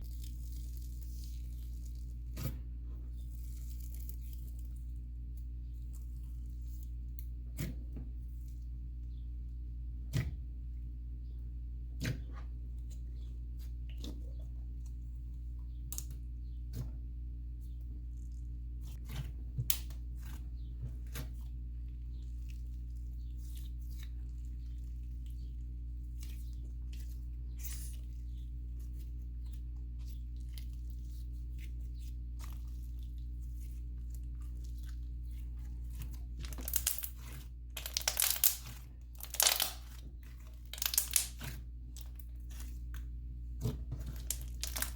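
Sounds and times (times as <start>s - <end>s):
steady low hum: 0.0s - 44.9s
slime crackling and popping: 36.4s - 42.1s, 44.1s - 44.9s.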